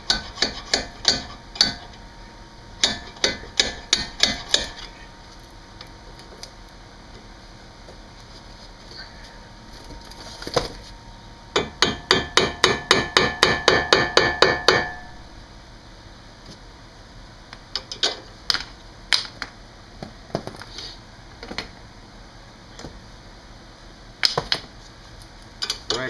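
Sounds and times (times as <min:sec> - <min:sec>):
hammer striking steel: 0:00.0 - 0:01.9, 0:02.8 - 0:04.9, 0:11.6 - 0:15.2.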